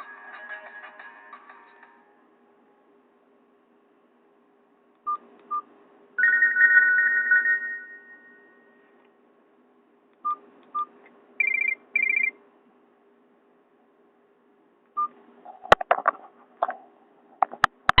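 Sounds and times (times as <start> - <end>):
phone beeping: 5.1 - 8.8, 10.3 - 12.3
trilling tone bursts: 6.2 - 8.8
clicks and knocks handling phone: 15.5 - 16.8, 17.4 - 18.0.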